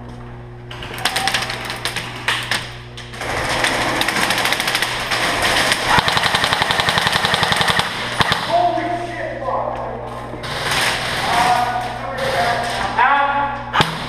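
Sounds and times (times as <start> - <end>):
airsoft guns firing full-auto: 0.7 - 8.7, 10.4 - 12.8.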